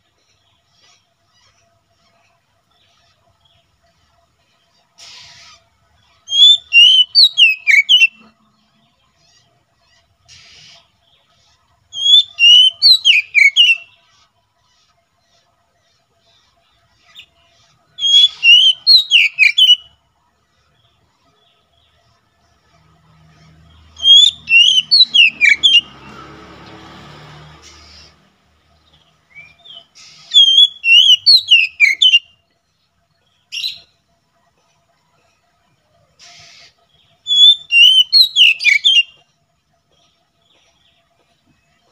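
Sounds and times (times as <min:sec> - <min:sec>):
bird singing whistled notes: 0:06.2 - 0:08.9, 0:11.9 - 0:14.0, 0:17.1 - 0:20.0, 0:23.5 - 0:26.1, 0:28.8 - 0:32.6, 0:33.2 - 0:34.0, 0:36.2 - 0:39.3.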